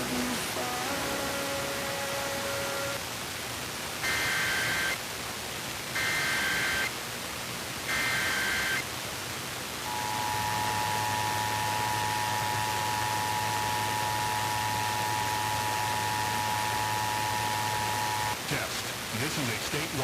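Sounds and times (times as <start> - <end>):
radio hiss: 0.0 - 3.0, 4.0 - 5.0, 5.9 - 6.9, 7.9 - 8.9, 9.8 - 20.0
data tone bursts: 4.0 - 5.0, 6.0 - 6.9, 7.9 - 8.8, 9.9 - 18.4
held tone: 7.9 - 8.8, 9.9 - 18.4
two-tone alert signal: 7.9 - 8.8.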